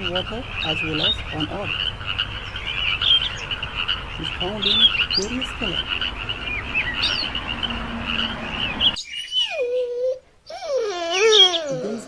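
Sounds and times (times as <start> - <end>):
steady background hiss: 0.0 - 9.4
frogs chirping: 0.0 - 9.5
puppy whining: 9.2 - 12.0.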